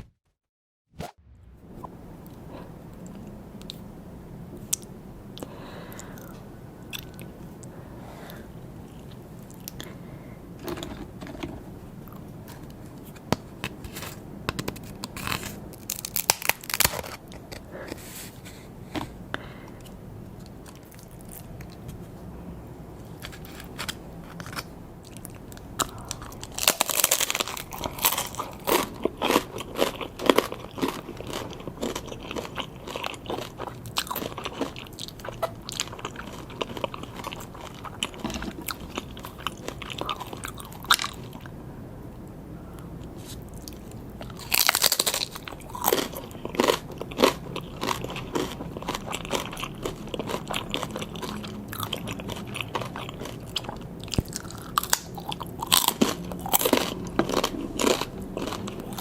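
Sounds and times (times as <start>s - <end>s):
crunchy biting and chewing: 4.6s - 7.7s, 13.8s - 17.8s, 23.2s - 41.5s, 43.0s - 59.0s.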